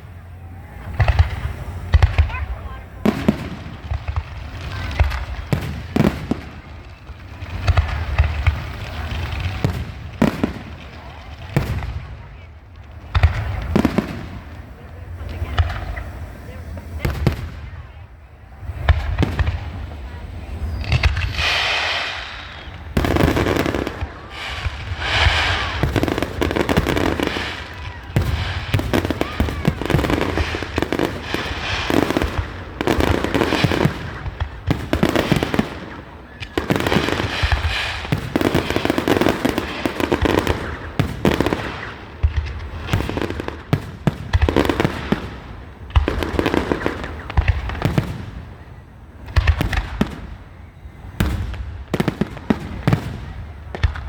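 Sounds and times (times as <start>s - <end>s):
fireworks crackling: 0.0s - 54.0s
fireworks shells bursting: 20.5s - 48.1s.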